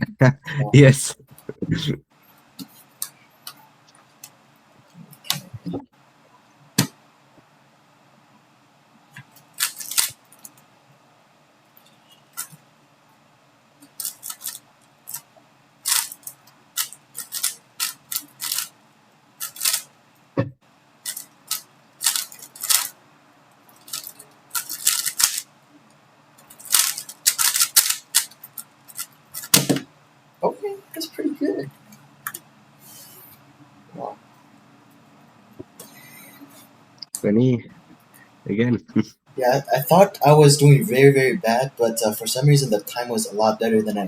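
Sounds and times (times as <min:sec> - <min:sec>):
plastic cube clicking turns: 0:15.9 - 0:16.2, 0:16.8 - 0:18.7, 0:21.1 - 0:22.9, 0:23.9 - 0:25.4, 0:26.7 - 0:28.3.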